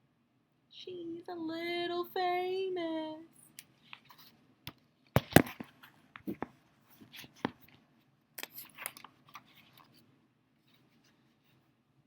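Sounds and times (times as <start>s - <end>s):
page turning: 8.4s - 10.1s.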